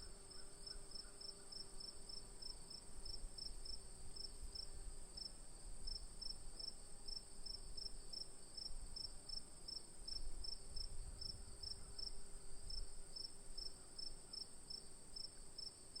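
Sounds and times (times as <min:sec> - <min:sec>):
lower cricket chirp: 0:00.0 - 0:16.0.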